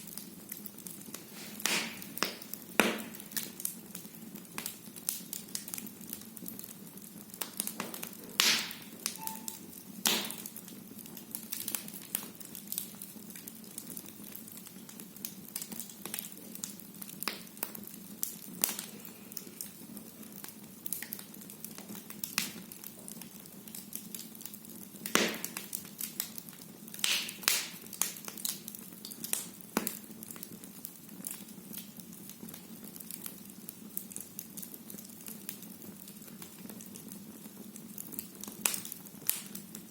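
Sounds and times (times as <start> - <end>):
sharp pops of fire: 0.0 - 6.6, 7.3 - 12.9, 14.8 - 19.8, 25.0 - 30.6, 37.9 - 39.9
firewood crackling: 0.0 - 39.9.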